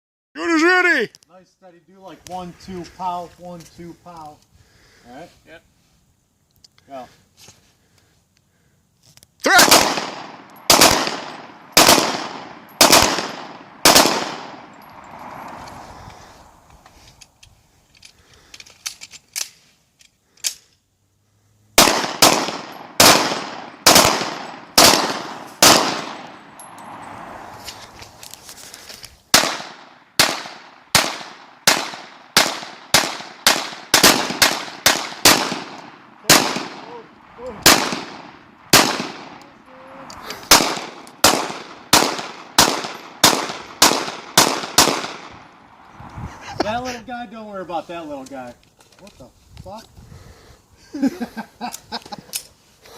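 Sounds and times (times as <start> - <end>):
gunshots with echo: 9.5 - 14.8, 21.8 - 26.4, 29.3 - 39.4, 40.5 - 45.4.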